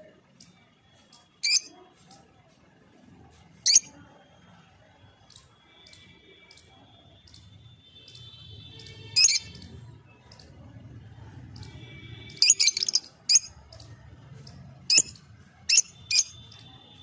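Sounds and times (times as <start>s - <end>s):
bird shrill chirps: 1.4s - 1.7s, 3.7s - 3.9s, 9.2s - 9.6s, 12.4s - 13.5s, 14.9s - 16.5s.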